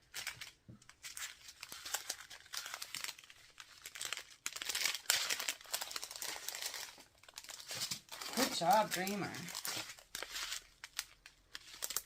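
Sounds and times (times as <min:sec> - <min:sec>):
plastic bags crinkling: 0:00.0 - 0:12.0.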